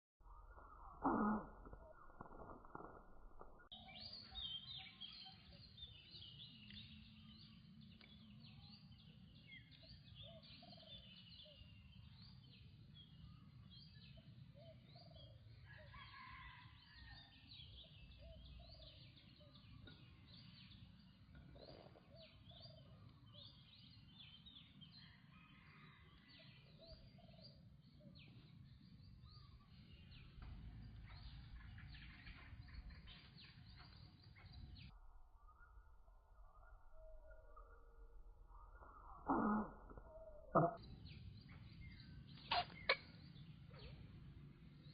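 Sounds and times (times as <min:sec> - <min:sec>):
birds chirping: 0:03.6 - 0:44.9.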